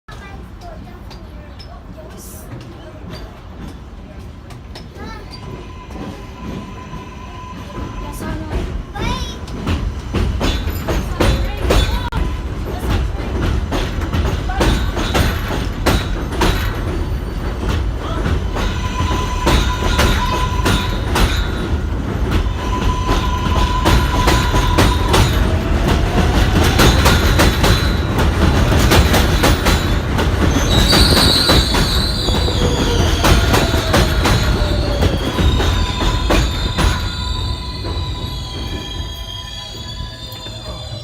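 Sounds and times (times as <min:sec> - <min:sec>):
train rumble: 0:00.1 - 0:41.0
train wheels clattering on rails: 0:00.1 - 0:41.0
high wheel squeal: 0:14.7 - 0:41.0.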